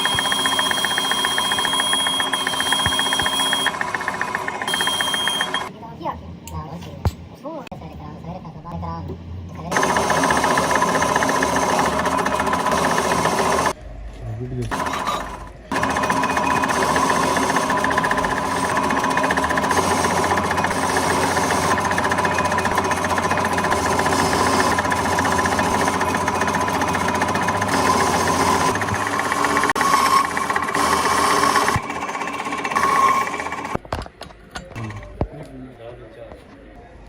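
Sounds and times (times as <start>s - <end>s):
workshop machinery buzzing rattle: 0.0s - 5.7s, 9.7s - 13.8s, 14.7s - 34.0s
machinery whine: 0.0s - 5.8s, 9.7s - 33.9s.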